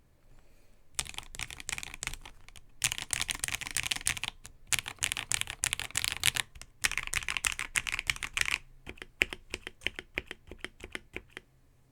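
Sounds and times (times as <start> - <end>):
mechanical keyboard typing: 1.0 - 11.4.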